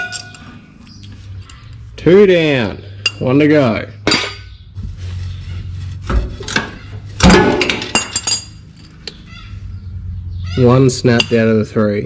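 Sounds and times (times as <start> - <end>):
metal tools clinking and knocking: 0.0 - 0.6, 4.0 - 4.5, 6.4 - 9.2, 11.1 - 11.5.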